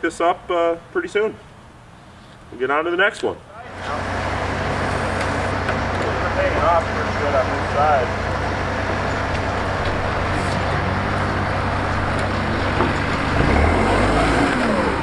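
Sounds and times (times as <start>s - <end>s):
vehicle engine running: 3.7s - 15.0s.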